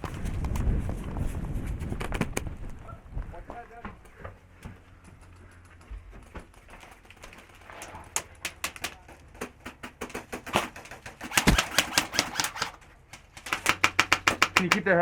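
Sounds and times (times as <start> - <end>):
airsoft guns firing: 8.3 - 15.0.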